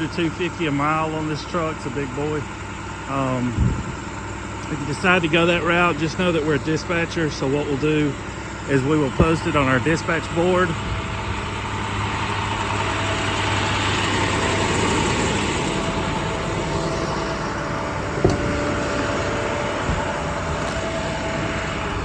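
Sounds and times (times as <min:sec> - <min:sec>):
diesel engine idling: 0:00.0 - 0:22.0
short knock: 0:18.2 - 0:18.8.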